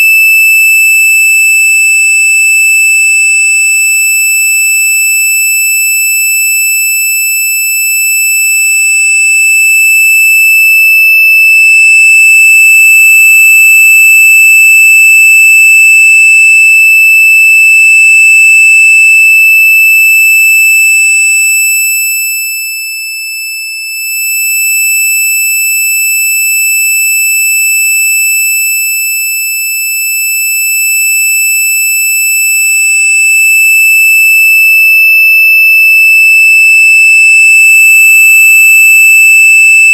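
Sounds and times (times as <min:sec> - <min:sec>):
high-pitched electronic tone: 0:11.2 - 0:16.7, 0:36.3 - 0:39.9.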